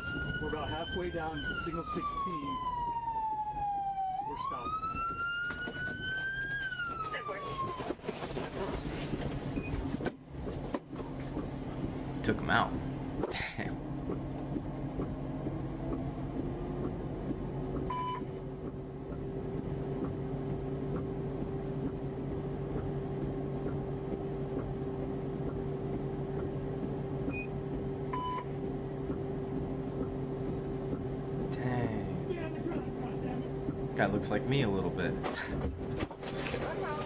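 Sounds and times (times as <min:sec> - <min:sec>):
steady droning hum: 0:00.0 - 0:37.0
short electronic beeps: 0:17.9 - 0:18.3, 0:27.3 - 0:28.5.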